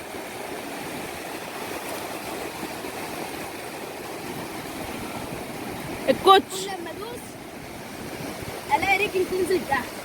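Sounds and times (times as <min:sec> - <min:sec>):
sea surf washing onto beach: 0:00.0 - 0:10.0.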